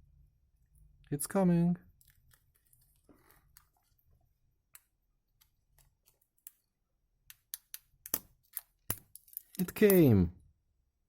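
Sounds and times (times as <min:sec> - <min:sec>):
faint small clicks and crackles: 0:01.9 - 0:04.1.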